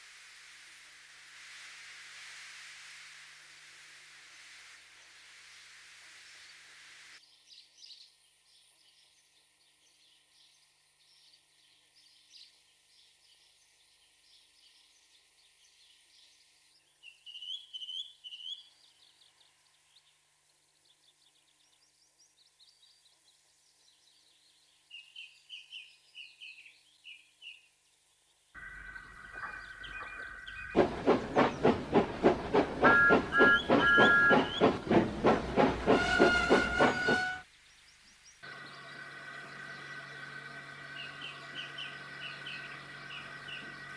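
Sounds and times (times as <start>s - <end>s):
steam hissing: 0.0s - 7.2s, 28.6s - 37.4s
birds chirping: 28.6s - 37.4s, 38.5s - 43.9s
steam locomotive chuffing: 28.6s - 37.4s
steam whistle: 32.8s - 34.8s, 35.8s - 37.4s.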